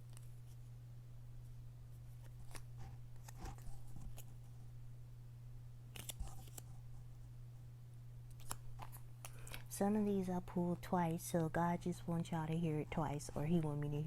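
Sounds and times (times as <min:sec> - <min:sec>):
paper cards rustling and clicking: 0:00.0 - 0:00.6, 0:02.1 - 0:04.5, 0:05.9 - 0:06.8, 0:08.3 - 0:09.7
steady low hum: 0:00.0 - 0:14.0.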